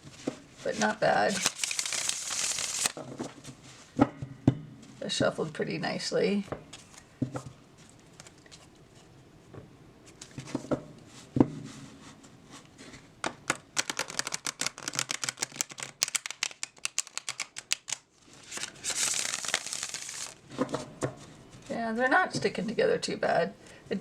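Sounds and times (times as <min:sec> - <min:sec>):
cards riffle shuffled: 0:00.8 - 0:03.0, 0:13.5 - 0:20.4
cards bridging and settling: 0:00.8 - 0:03.2, 0:13.2 - 0:20.8
cards tapping and knocking: 0:13.2 - 0:18.0.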